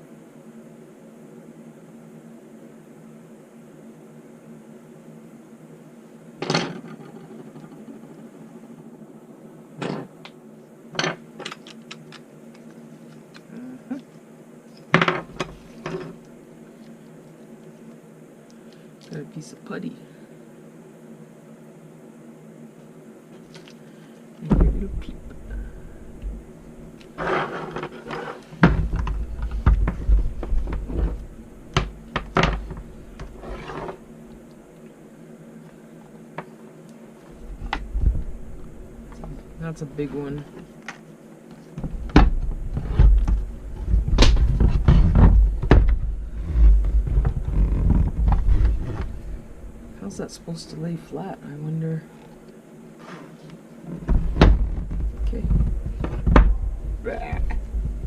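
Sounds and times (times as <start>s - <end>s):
steady low hum: 0.0s - 58.0s
low rumble: 24.5s - 27.0s, 37.4s - 39.6s, 54.6s - 58.0s.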